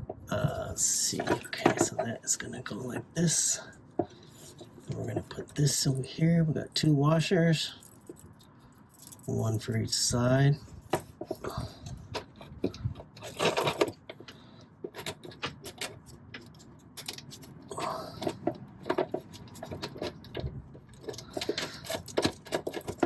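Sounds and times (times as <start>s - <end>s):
small metal parts clinking: 7.7s - 9.8s, 10.7s - 23.0s.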